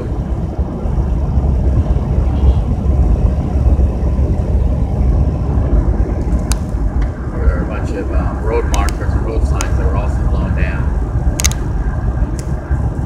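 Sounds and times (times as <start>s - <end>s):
van road rumble from inside: 0.0s - 13.0s
sharp click: 11.4s - 11.6s.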